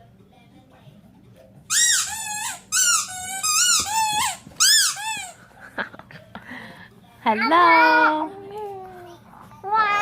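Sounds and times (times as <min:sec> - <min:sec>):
squeaky dog toy squeaking: 0:01.7 - 0:05.4.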